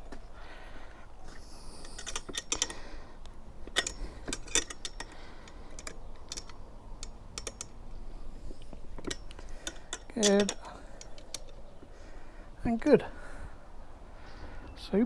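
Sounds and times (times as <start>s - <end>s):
plastic and metal parts clicking: 1.8s - 2.9s, 3.6s - 7.8s, 8.6s - 11.6s.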